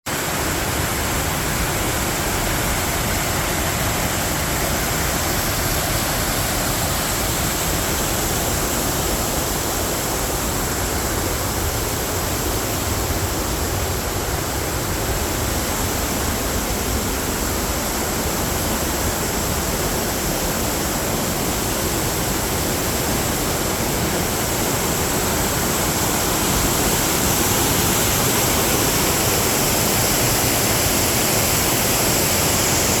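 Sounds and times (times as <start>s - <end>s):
waterfall roaring: 0.1s - 33.0s.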